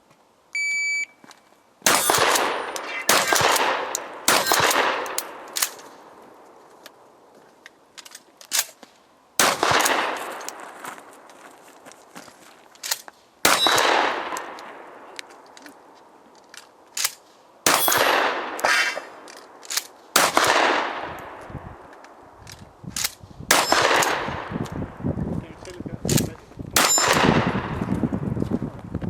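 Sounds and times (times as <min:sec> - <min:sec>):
shotgun shots ringing out: 0:01.8 - 0:06.0, 0:09.4 - 0:10.5, 0:13.4 - 0:14.8, 0:17.6 - 0:19.2, 0:20.1 - 0:21.4, 0:23.5 - 0:24.5, 0:26.8 - 0:27.9
shotgun pump clacks and clangs: 0:01.9 - 0:05.9, 0:16.5 - 0:18.0.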